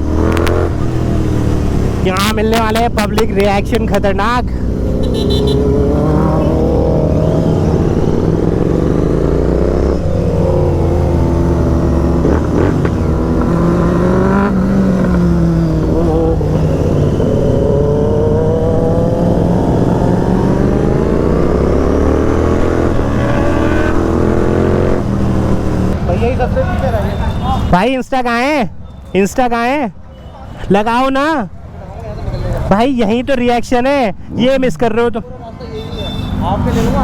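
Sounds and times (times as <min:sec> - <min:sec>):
motorcycle engine accelerating: 0:00.0 - 0:02.5, 0:04.6 - 0:26.0.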